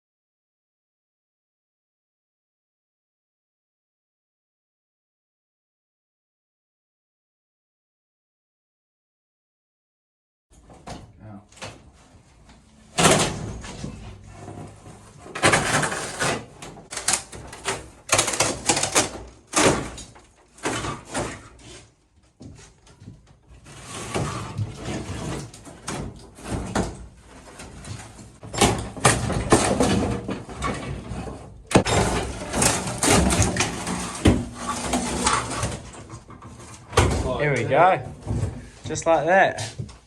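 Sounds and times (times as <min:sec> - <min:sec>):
knocks bangs and scraping: 0:10.6 - 0:40.0.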